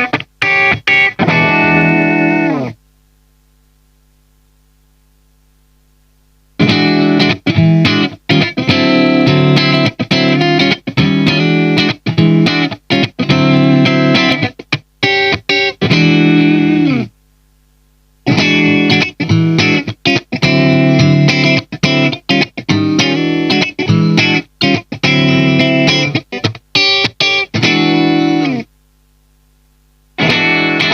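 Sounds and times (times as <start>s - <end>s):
clean electric guitar chords: 0.0s - 2.8s, 6.6s - 17.1s, 18.2s - 28.7s, 30.2s - 30.9s
faint amp hum: 0.0s - 30.9s.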